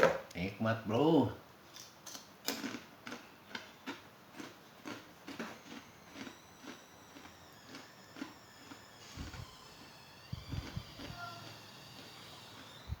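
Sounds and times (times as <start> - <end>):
chewing food: 2.5 - 9.4.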